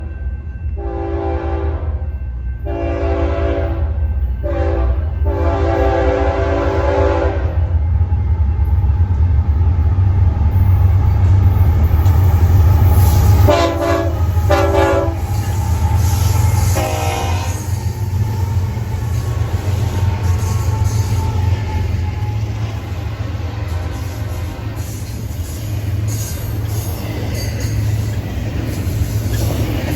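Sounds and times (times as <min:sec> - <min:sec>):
low rumble of passing train: 0:00.0 - 0:29.9
train horn blasts: 0:00.8 - 0:07.7, 0:13.4 - 0:24.8.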